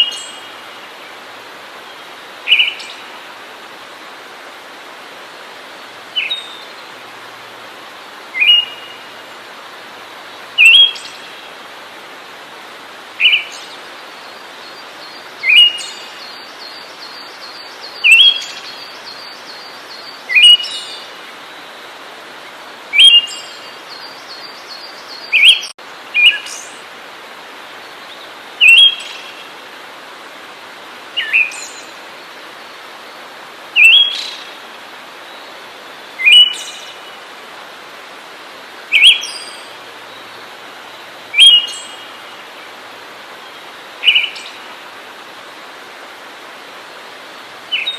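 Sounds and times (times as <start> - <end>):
steady background hiss: 0.0 - 47.9
songbird sharp upward call: 41.3 - 42.0.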